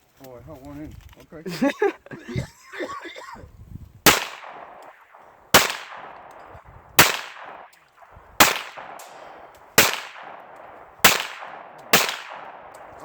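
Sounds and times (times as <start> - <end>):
handgun shots echoing: 4.1 - 13.0.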